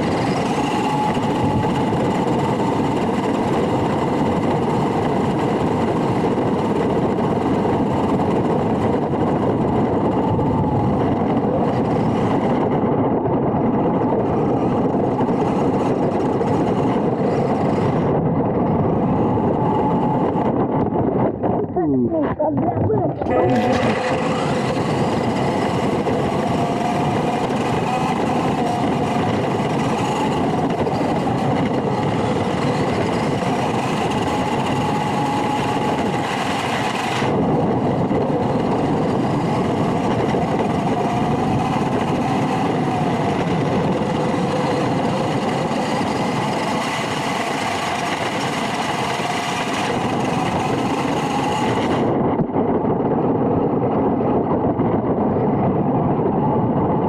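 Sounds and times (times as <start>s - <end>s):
rc truck motor whining: 0.0s - 20.9s, 23.2s - 52.3s
continuous rumble: 0.0s - 57.0s.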